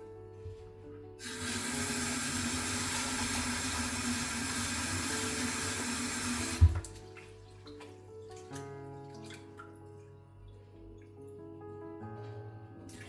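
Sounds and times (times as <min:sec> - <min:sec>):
water running from a tap: 0:01.2 - 0:09.3.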